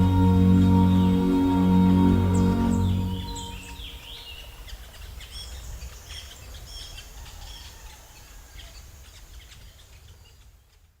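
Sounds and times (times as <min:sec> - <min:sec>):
birds chirping: 0:00.0 - 0:07.1.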